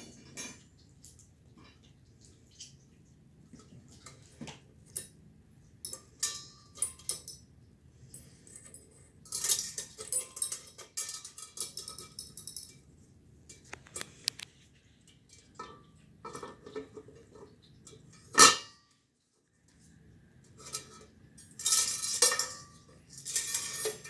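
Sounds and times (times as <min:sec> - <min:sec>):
small metal parts clinking: 0:05.9 - 0:07.4, 0:08.1 - 0:12.8, 0:21.4 - 0:24.0.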